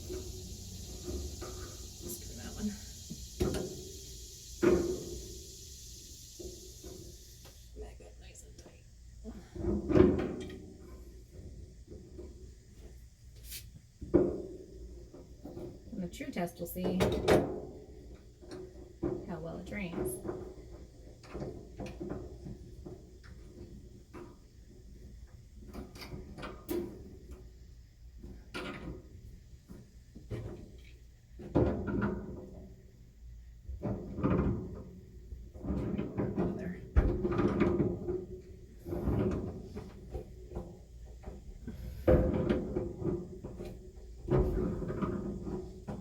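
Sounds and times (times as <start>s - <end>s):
low steady hum: 0.0s - 13.6s
knocks and clunks of handling: 33.7s - 46.0s.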